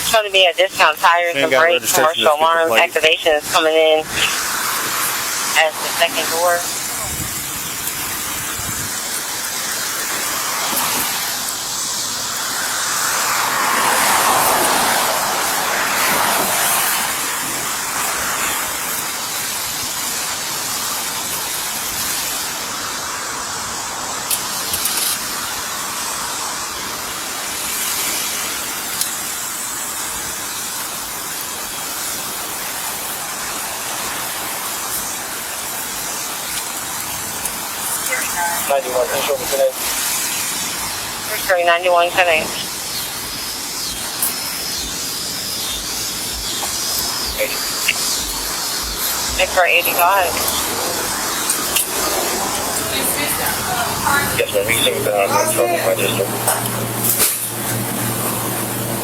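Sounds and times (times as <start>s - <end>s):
car road and wind noise: 6.7s - 19.6s, 42.6s - 59.0s.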